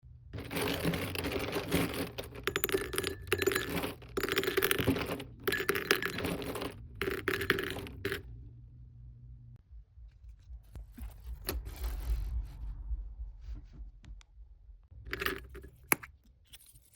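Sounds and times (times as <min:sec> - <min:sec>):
small items clicking and clinking: 0:00.4 - 0:08.3, 0:15.1 - 0:16.7.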